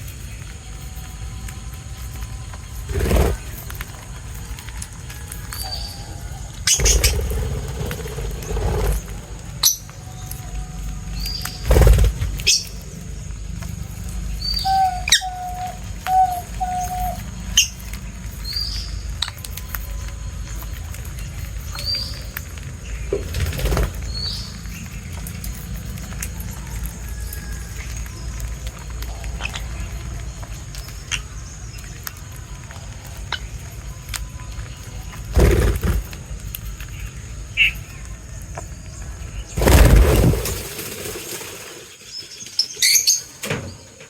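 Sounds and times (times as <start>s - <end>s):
small birds chirping: 0.0s - 44.0s
steady low rumble: 6.4s - 14.7s.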